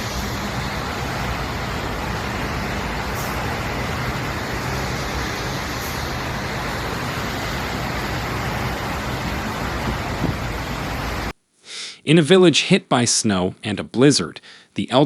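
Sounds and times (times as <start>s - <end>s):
vehicle engine running: 0.0s - 11.3s
rushing noise: 0.0s - 11.4s.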